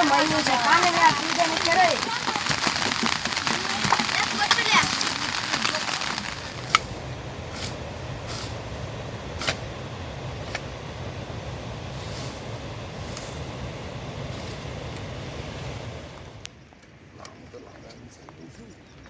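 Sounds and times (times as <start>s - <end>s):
drops ticking: 0.0s - 6.8s
steady rain: 0.0s - 9.3s.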